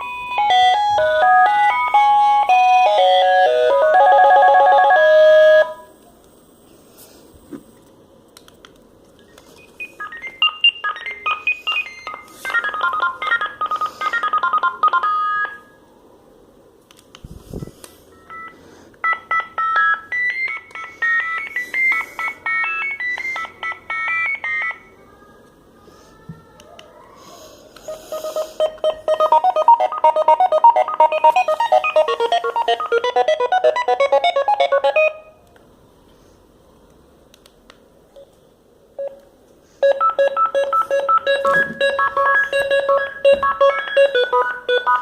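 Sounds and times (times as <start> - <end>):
phone beeping ringtone melodies: 0.0 - 5.9, 9.6 - 15.6, 27.9 - 35.4, 39.8 - 45.0.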